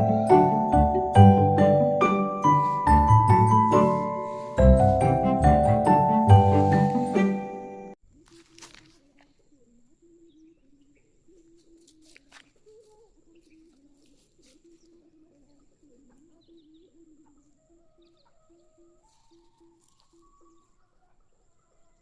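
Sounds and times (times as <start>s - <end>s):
low notes between two pitches: 0.0s - 7.5s.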